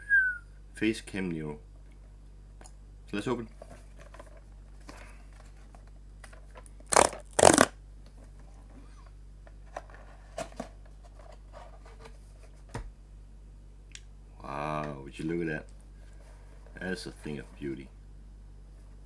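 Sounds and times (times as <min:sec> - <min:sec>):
packaging rustling and clicking: 0:06.2 - 0:07.7
cardboard box rasping open: 0:06.9 - 0:07.7.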